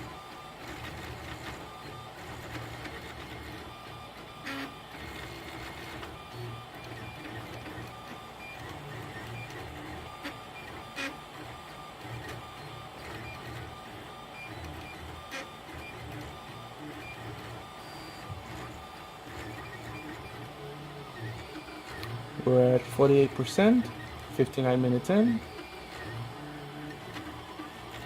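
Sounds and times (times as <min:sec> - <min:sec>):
three d printer motors whining: 0:00.0 - 0:28.0.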